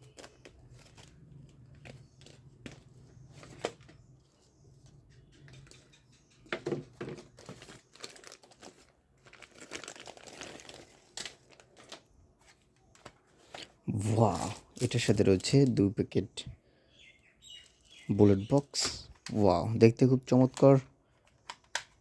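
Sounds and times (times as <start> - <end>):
plastic packaging crinkling: 0.0 - 3.8, 7.1 - 15.8.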